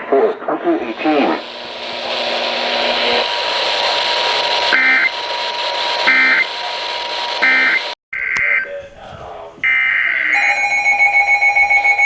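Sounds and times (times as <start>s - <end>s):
radio static hiss: 0.0s - 9.5s
buzzy digital data bursts: 0.8s - 8.0s.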